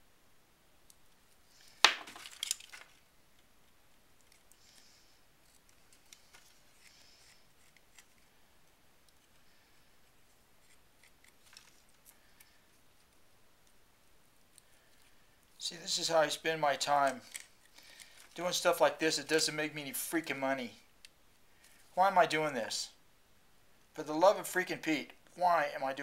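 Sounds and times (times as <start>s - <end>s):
small objects rustling and clattering: 1.2s - 8.4s, 9.1s - 13.2s.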